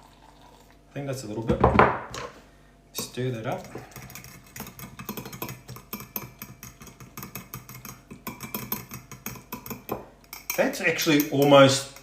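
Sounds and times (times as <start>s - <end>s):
utensil clinking against bowl: 3.0s - 12.0s.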